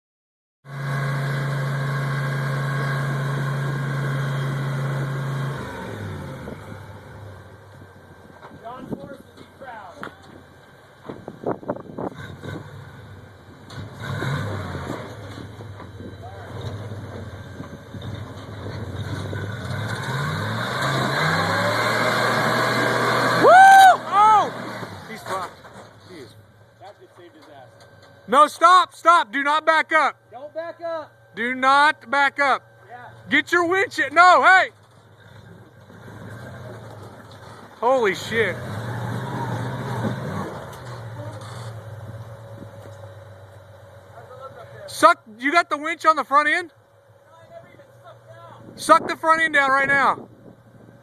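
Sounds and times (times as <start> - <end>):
buggy engine running: 0.6 - 51.0
loud high yell: 23.4 - 24.6.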